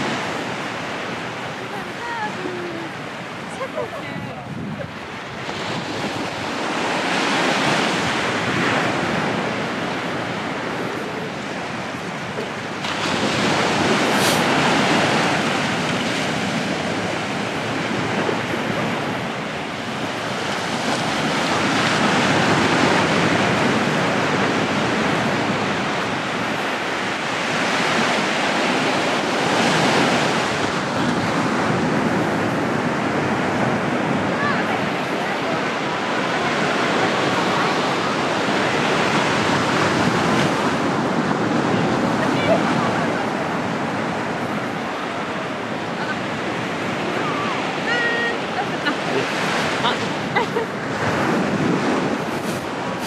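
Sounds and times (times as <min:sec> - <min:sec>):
sea waves breaking on beach: 0:00.0 - 0:53.0.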